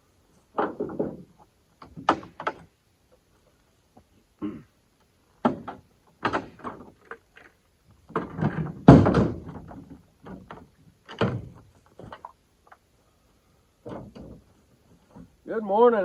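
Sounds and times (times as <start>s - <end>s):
knocks and thuds: 0.5s - 2.6s, 5.4s - 6.9s, 8.1s - 12.2s, 13.8s - 14.5s.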